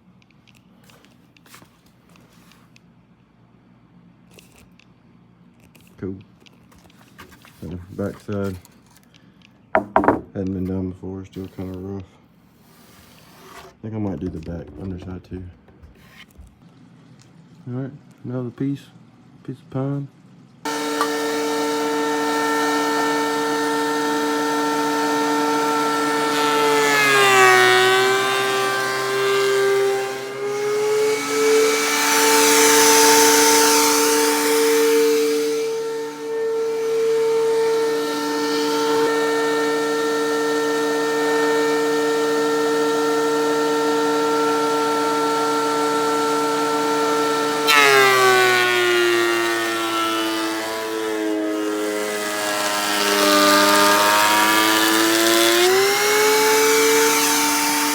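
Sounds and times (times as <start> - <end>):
planer motor whine: 20.7 - 57.9
wood cutting hiss: 20.7 - 57.9.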